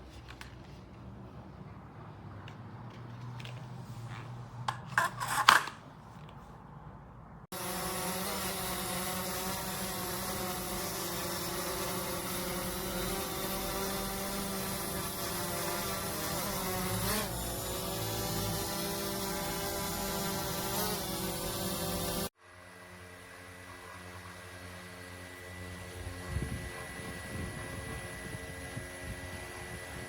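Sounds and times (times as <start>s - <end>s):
quadcopter propellers buzzing: 7.5s - 30.0s.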